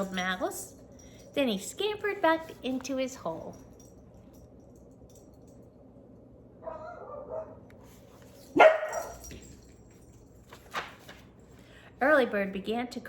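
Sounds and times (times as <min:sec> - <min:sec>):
dog barking: 0:06.6 - 0:07.7, 0:08.5 - 0:09.3.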